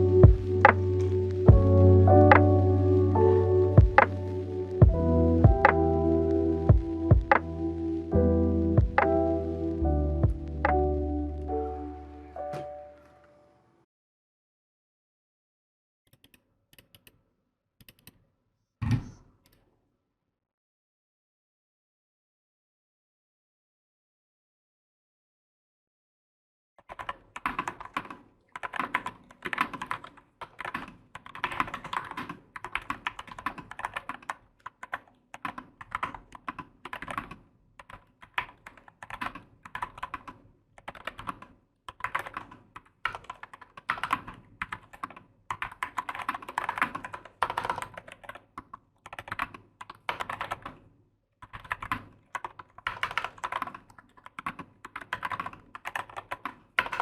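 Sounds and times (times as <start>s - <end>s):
mechanical keyboard keystrokes: 26.8s - 50.8s, 51.4s - 57.0s.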